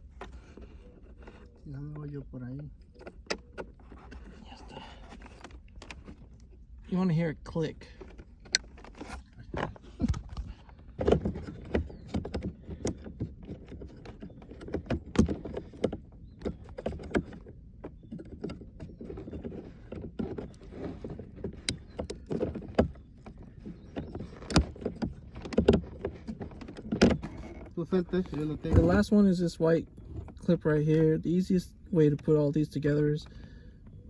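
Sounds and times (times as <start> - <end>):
plastic clicks and knocks: 8.0 - 29.0.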